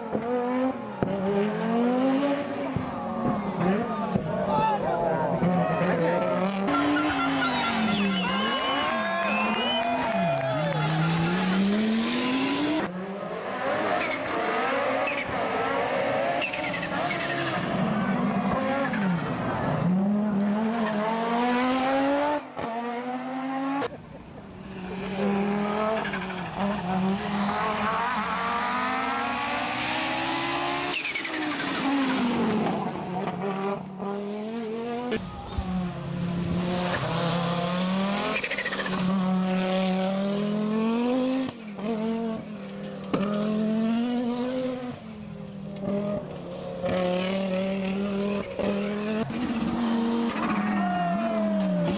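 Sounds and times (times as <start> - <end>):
rally car engine revving: 0.0 - 51.9.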